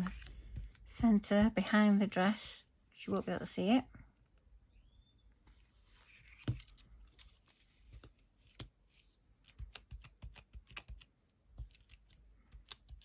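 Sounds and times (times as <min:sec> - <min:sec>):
paper and card clicks and taps: 0:07.9 - 0:08.8, 0:09.4 - 0:13.0.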